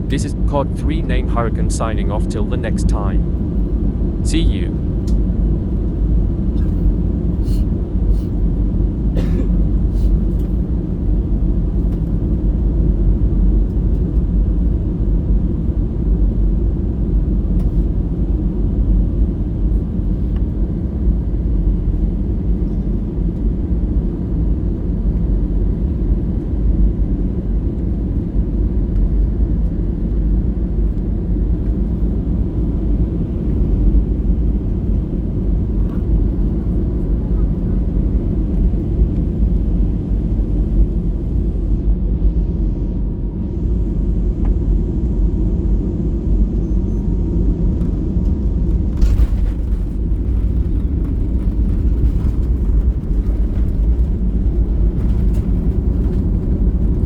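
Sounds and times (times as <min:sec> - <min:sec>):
aircraft cabin engine rumble: 0:00.0 - 0:57.0.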